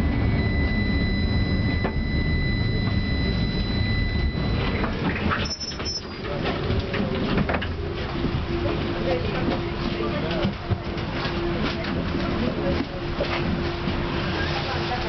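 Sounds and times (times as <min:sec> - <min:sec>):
thin high whine: 0:00.0 - 0:06.2
tram rumbling on rails: 0:00.0 - 0:15.0.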